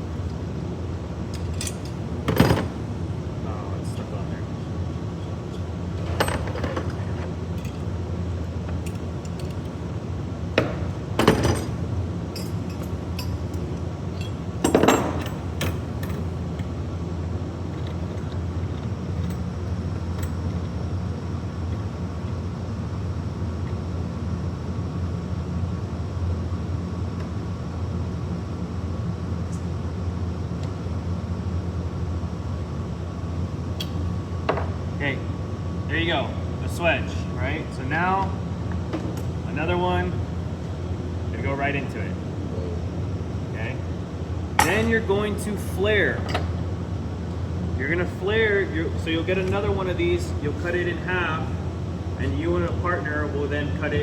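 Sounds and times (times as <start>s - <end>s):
steady low hum: 0.0s - 54.0s
metallic clinks and clicks: 12.4s - 16.2s.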